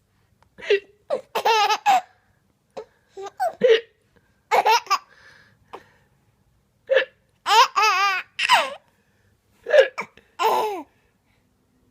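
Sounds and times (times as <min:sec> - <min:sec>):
baby laughing: 0:00.6 - 0:02.2, 0:03.2 - 0:03.9, 0:04.5 - 0:05.1, 0:07.4 - 0:08.8, 0:09.7 - 0:10.9.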